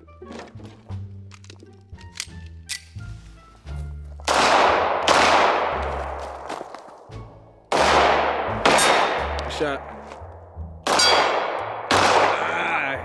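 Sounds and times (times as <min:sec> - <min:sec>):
background music with bass: 0:00.0 - 0:06.5, 0:07.2 - 0:13.0
pistol shots: 0:04.3 - 0:07.0, 0:07.7 - 0:09.9, 0:10.8 - 0:12.7.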